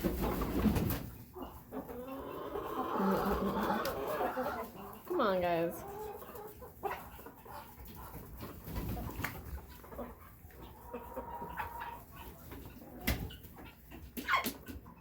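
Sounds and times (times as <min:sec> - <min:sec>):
poultry clucking: 0:00.0 - 0:15.0.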